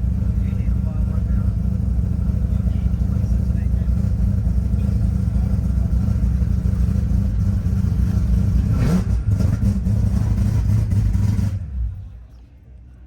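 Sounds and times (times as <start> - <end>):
car engine revving hard: 7.6 - 11.6.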